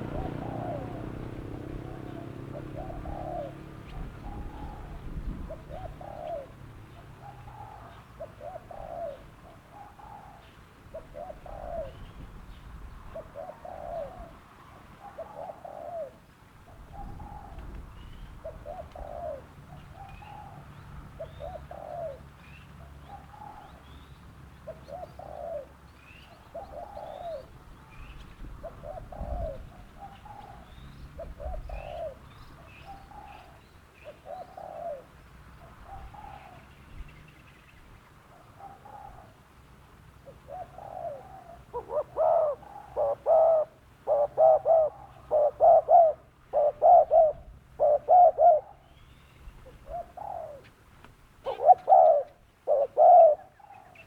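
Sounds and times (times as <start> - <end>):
dove cooing: 0.0 - 24.0, 24.6 - 36.8, 38.3 - 39.4, 40.2 - 50.8, 51.4 - 54.0
small birds chirping: 17.0 - 39.3.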